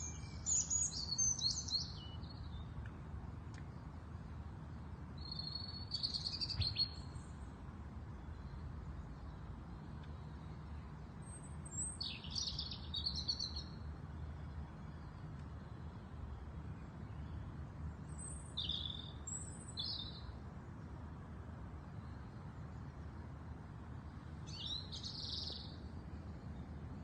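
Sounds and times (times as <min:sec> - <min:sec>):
small birds chirping: 0:00.0 - 0:03.0, 0:03.6 - 0:07.6, 0:08.2 - 0:16.1, 0:16.7 - 0:20.3, 0:24.0 - 0:25.8
low steady hum: 0:00.0 - 0:27.0.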